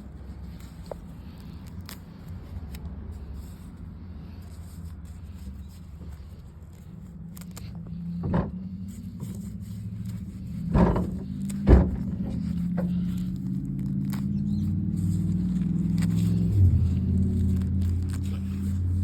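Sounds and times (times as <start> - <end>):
engine running: 0.0 - 19.0
sharp thumps: 10.6 - 12.9.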